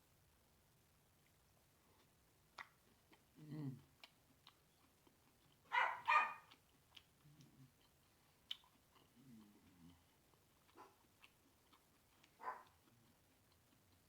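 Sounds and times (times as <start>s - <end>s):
faint low hum: 0.0s - 14.0s
lip smacks and mouth clicks: 1.2s - 14.0s.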